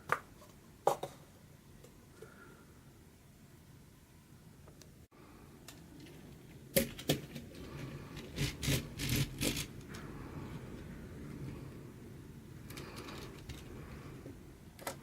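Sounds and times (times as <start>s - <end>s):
plastic pieces clicking: 5.7s - 10.0s
plastic pieces scraping and rattling: 6.0s - 10.0s, 12.7s - 13.7s.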